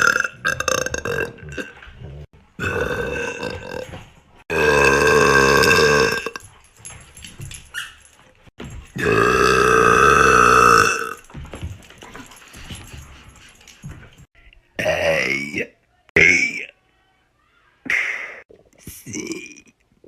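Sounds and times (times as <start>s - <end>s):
woman burping: 4.5s - 6.4s, 9.0s - 11.2s.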